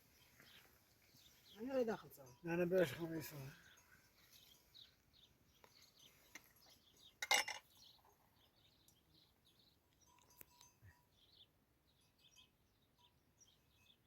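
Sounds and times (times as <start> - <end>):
faint bird chirps: 3.4 - 14.0
clinking rasp: 7.2 - 7.9.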